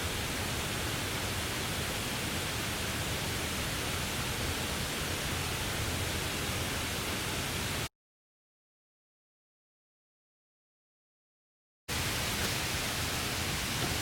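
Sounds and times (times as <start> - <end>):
rain hissing on a tarp: 0.0 - 7.9, 11.9 - 14.0.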